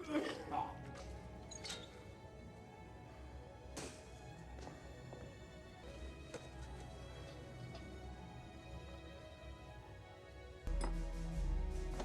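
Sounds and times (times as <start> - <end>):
quiet film score music: 0.0 - 12.0.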